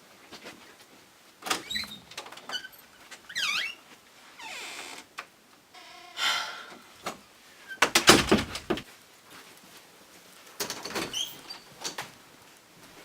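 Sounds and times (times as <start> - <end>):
knocks and rattles: 7.8 - 8.8.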